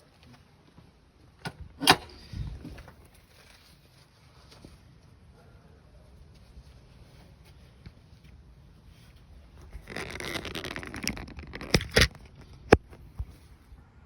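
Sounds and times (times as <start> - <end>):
scraping rustling handling noise: 6.2 - 13.6.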